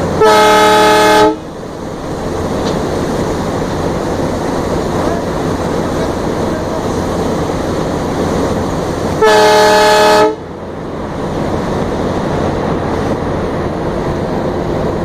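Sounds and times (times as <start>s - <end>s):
train engine and wheels running: 0.0s - 15.0s
locomotive horn blast: 0.1s - 1.5s, 9.2s - 10.5s.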